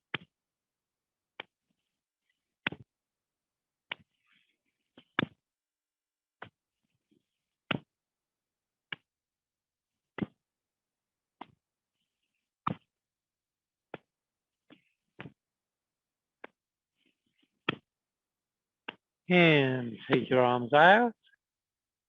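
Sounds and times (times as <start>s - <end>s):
hands slapping against body: 1.3s - 1.6s, 2.6s - 2.9s, 3.8s - 4.2s, 4.9s - 5.5s, 7.6s - 8.0s, 8.8s - 9.2s, 10.1s - 10.4s, 12.6s - 13.0s, 16.4s - 16.7s, 17.6s - 18.0s, 18.8s - 19.1s.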